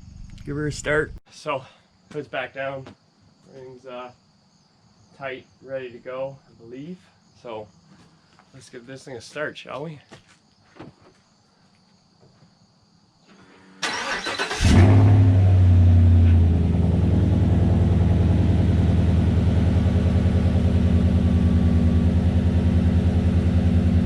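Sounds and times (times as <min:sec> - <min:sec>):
starter motor cranking: 0:13.8 - 0:14.8
car engine idling: 0:13.8 - 0:24.0.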